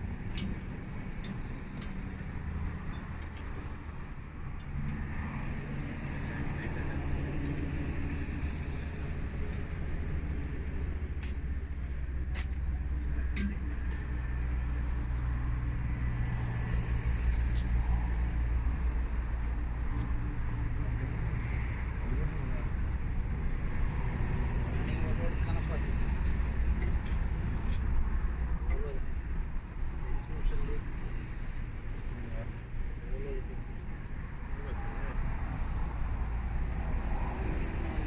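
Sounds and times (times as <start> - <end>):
vehicle engine humming: 0.0 - 38.0
sharp metallic clicks: 0.2 - 3.8, 12.4 - 14.5.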